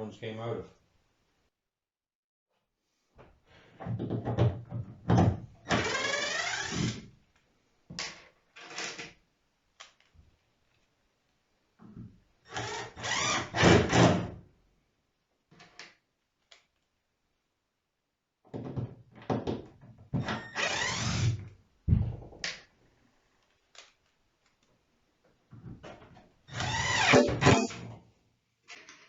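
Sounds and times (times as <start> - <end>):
cordless drill driving screws: 5.7 - 7.0, 12.5 - 14.0, 20.4 - 21.4, 26.5 - 27.6.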